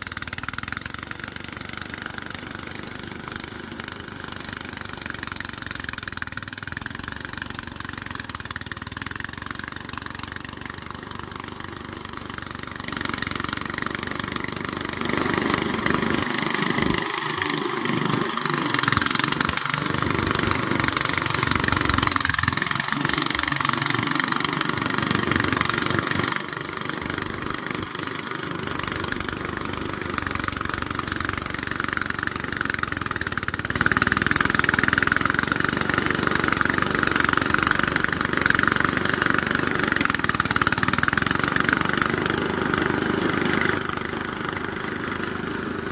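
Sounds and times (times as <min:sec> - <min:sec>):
motor engine running: 0:00.0 - 0:45.9.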